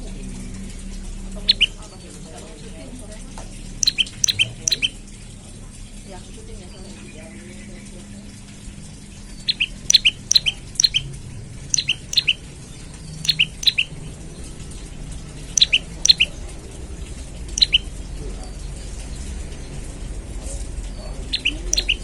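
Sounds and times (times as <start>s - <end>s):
bird chirping: 1.4s - 2.0s, 3.8s - 5.1s, 6.7s - 19.8s, 20.8s - 22.0s.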